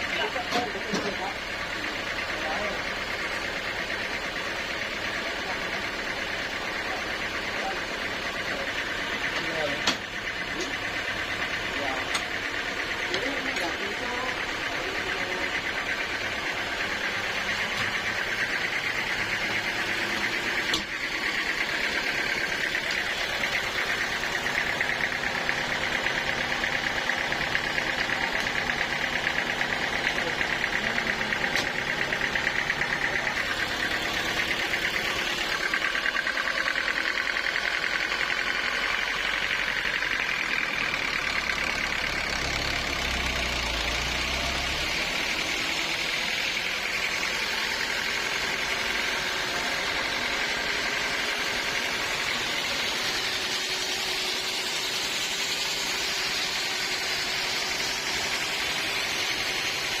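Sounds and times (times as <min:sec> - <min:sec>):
sawmill machinery running: 0:00.0 - 1:00.0.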